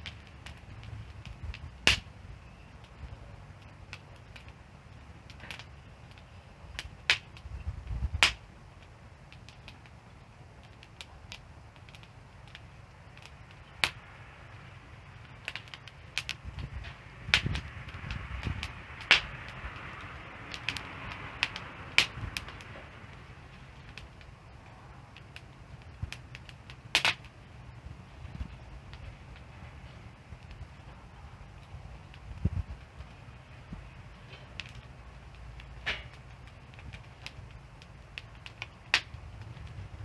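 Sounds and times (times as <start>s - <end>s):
low rumble of flames: 0.0s - 40.0s
wood fire crackling and popping: 0.0s - 40.0s.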